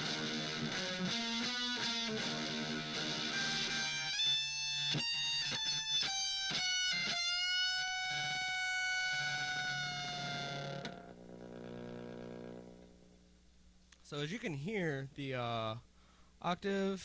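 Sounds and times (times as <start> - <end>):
distorted electric guitar: 0.0 - 13.0.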